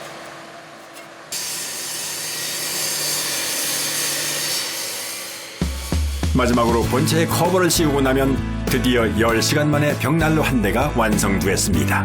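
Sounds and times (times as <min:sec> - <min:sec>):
power tool running with hiss: 0:01.3 - 0:06.3.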